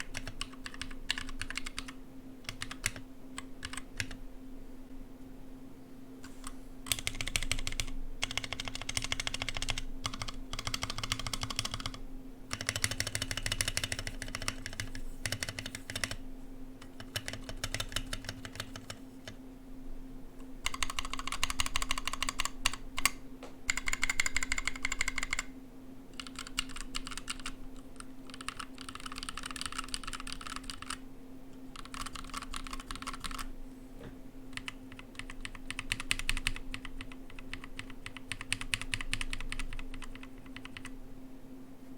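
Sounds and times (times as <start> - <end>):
mechanical keyboard clacks: 0.0 - 4.2, 6.9 - 16.2, 16.8 - 19.4, 20.6 - 25.5, 26.2 - 27.6, 28.3 - 31.0, 31.8 - 33.5, 34.5 - 40.9
steady low hum: 0.0 - 41.9.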